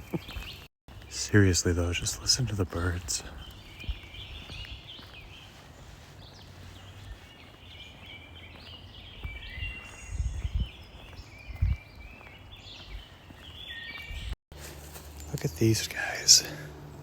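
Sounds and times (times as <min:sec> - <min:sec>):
songbirds singing and chirping: 0:00.0 - 0:17.0
dull low thumps: 0:03.3 - 0:04.9, 0:09.1 - 0:12.1.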